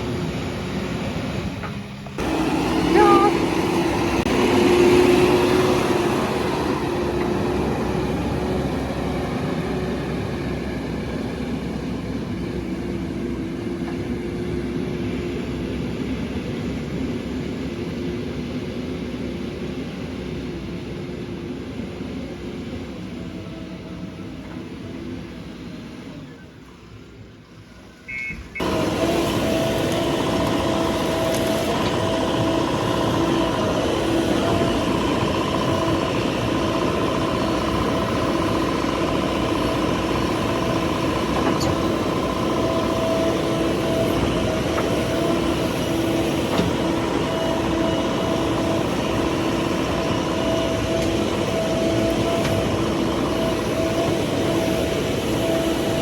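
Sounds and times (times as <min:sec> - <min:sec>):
steady whining tone: 0:00.0 - 0:17.0, 0:28.6 - 0:56.0
diesel engine running: 0:00.0 - 0:56.0.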